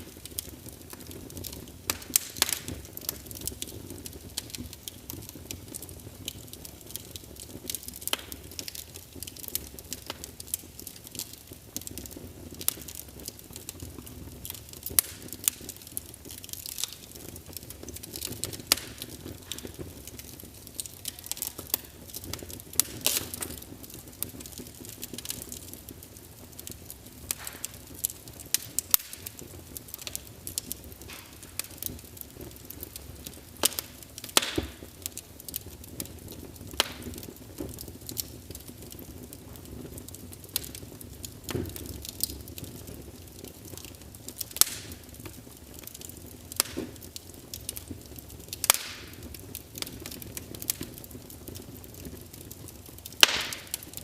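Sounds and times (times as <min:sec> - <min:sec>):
fire crackling and popping: 0:00.0 - 0:54.0
fire hissing: 0:00.0 - 0:54.0.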